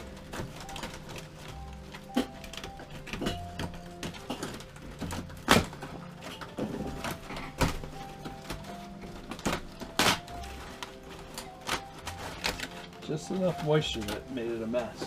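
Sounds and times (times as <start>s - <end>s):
wall paneling being pried loose: 2.2s - 8.7s.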